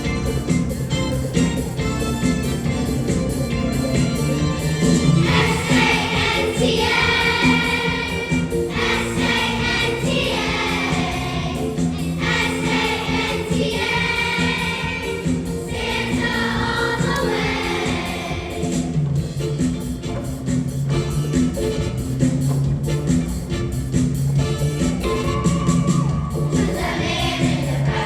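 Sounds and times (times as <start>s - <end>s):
choir singing: 5.2s - 19.1s, 26.3s - 28.0s.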